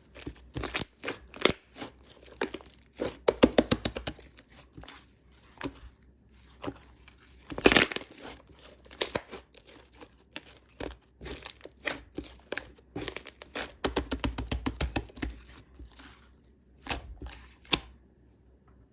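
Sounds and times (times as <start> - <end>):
slime crackling and popping: 7.5 - 8.3, 8.9 - 9.7
slime tearing crackle: 7.5 - 8.3.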